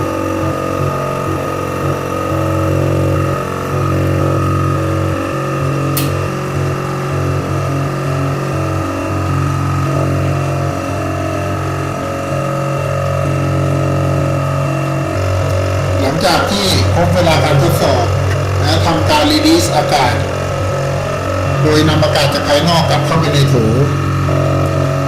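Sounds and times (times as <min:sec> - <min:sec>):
vacuum pump running: 0:00.0 - 0:25.0
sharp click: 0:06.0 - 0:06.2.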